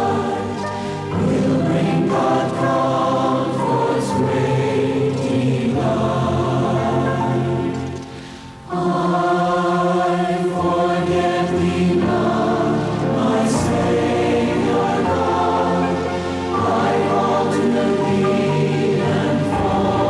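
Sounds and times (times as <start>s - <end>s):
congregation singing: 0.0s - 20.0s.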